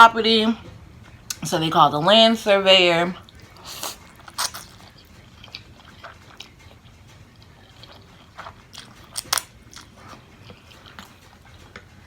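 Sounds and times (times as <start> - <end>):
chewing crunchy food: 3.2 - 12.0.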